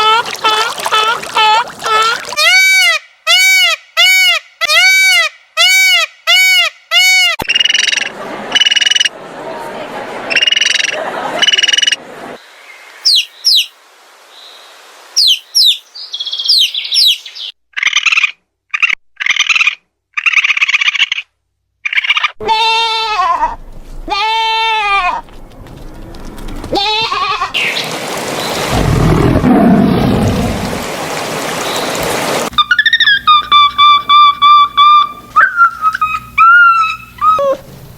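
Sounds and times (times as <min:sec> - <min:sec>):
high bird chirps: 0:13.0 - 0:13.7, 0:15.2 - 0:17.6, 0:32.6 - 0:37.5
goats bleating: 0:22.4 - 0:25.2, 0:26.7 - 0:27.6
long noisy rasping call: 0:32.5 - 0:37.6
buzzy animal calls: 0:32.5 - 0:37.7.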